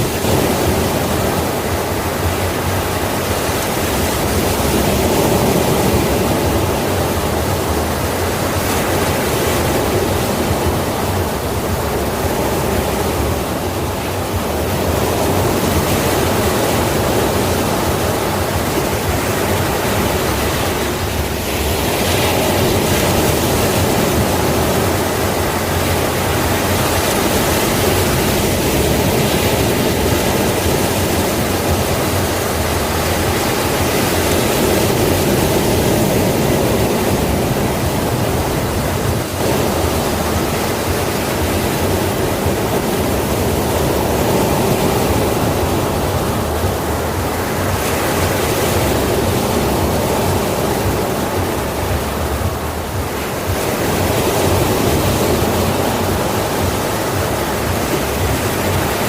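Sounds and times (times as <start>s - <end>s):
sea waves breaking: 0.0s - 59.0s.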